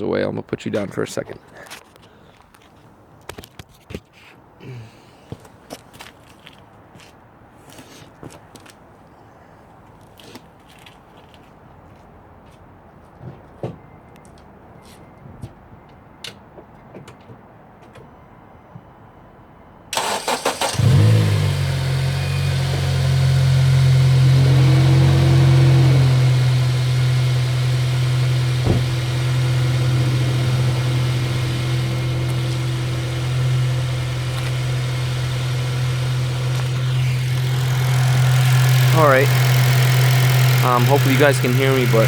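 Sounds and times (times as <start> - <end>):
car engine starting and idling: 20.0 - 42.0.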